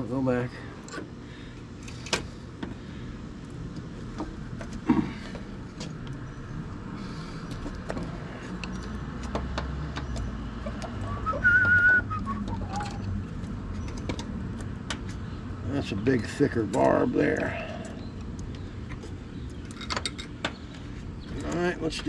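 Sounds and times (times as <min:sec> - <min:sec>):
low hum: 0:00.0 - 0:21.4
short wavering whistle: 0:11.1 - 0:12.8.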